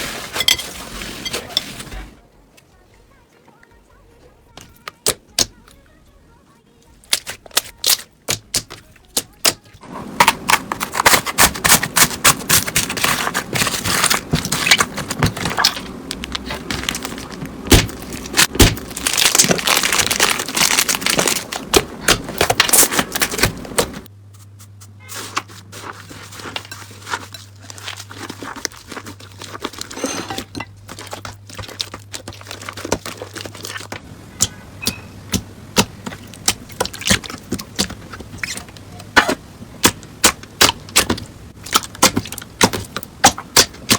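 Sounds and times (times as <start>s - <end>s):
low steady hum: 0.0s - 43.9s
slime crackling and popping: 7.0s - 9.6s, 10.3s - 24.1s.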